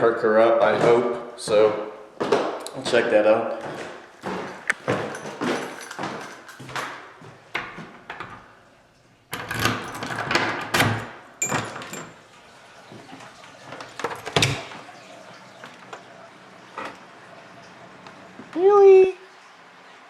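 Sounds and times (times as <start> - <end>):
objects knocking and rattling: 3.7 - 8.5, 9.3 - 12.2.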